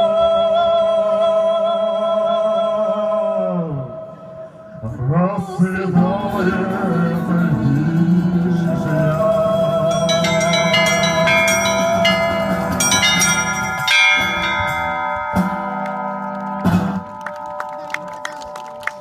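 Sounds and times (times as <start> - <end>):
large bells ringing: 7.7 - 19.0
small bells striking: 9.8 - 16.6
heavy bell strokes: 9.8 - 17.0.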